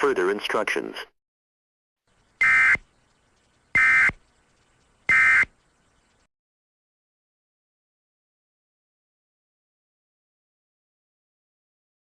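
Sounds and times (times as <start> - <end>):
digital buzzing data bursts: 2.4 - 2.8, 3.7 - 4.2, 5.1 - 5.5.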